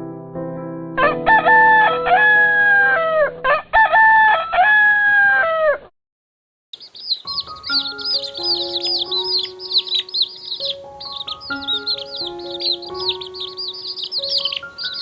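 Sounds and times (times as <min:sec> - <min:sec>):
rooster crowing: 0:01.0 - 0:05.9
high rapid bird chirps: 0:06.8 - 0:15.0.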